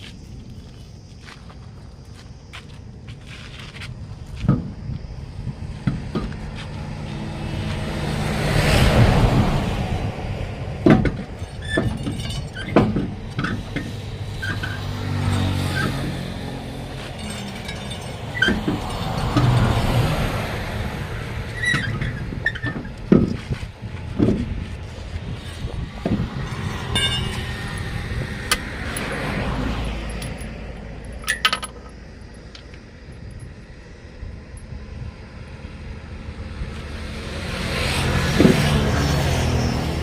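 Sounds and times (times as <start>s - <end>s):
road traffic passing: 0.0s - 40.0s
metal tool clinks and knocks: 10.9s - 19.8s, 26.4s - 29.2s, 29.9s - 33.6s.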